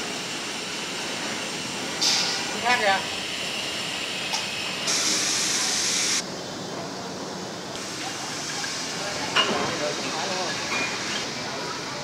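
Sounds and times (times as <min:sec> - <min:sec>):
steel-cutting machine hissing: 0:01.2 - 0:06.2.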